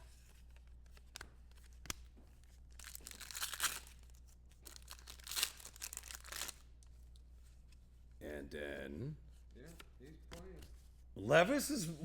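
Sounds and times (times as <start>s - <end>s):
foil wrapper tearing and crinkling: 2.7s - 6.7s.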